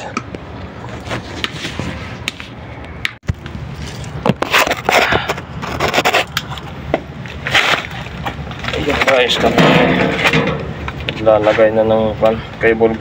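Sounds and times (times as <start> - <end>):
hand tools scraping and clicking: 3.8 - 6.7.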